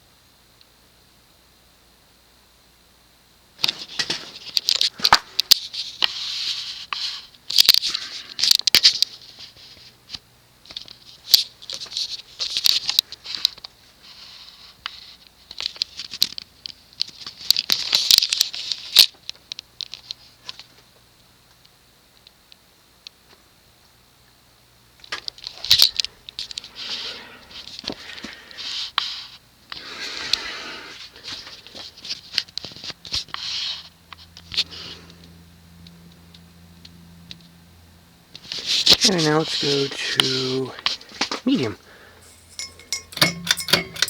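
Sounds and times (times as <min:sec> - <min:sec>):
faint steady hum: 0:00.0 - 0:44.0
crackling and rustling: 0:25.0 - 0:37.6.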